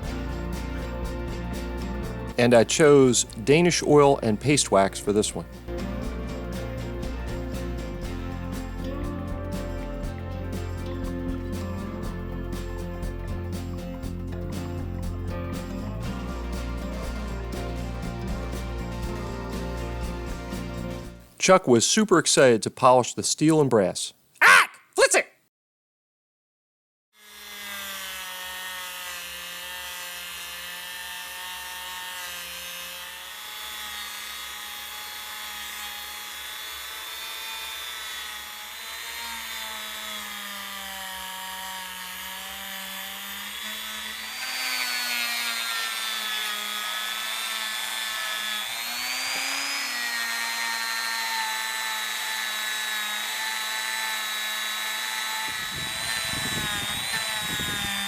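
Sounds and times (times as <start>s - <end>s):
polishing machine motor whine: 27.2s - 58.0s.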